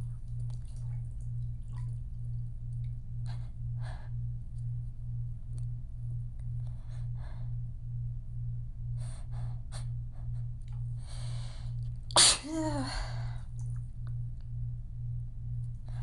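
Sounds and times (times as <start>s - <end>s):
woman sneezing: 12.2s - 13.1s.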